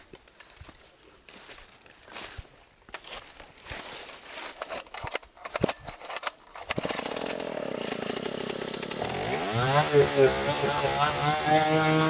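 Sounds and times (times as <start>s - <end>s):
chainsaw engine running: 6.8s - 12.0s.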